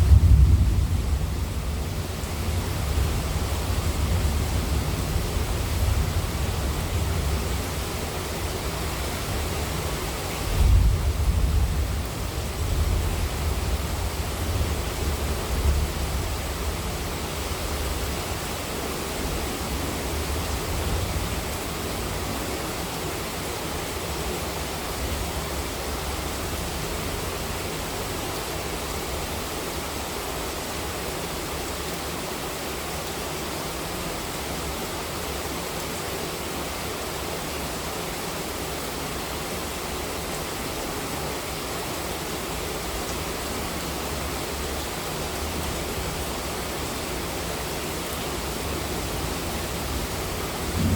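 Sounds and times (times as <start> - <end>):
low thunder rumble: 0.0 - 7.8, 9.4 - 17.2, 48.8 - 50.9
heavy rain hissing: 0.0 - 50.9.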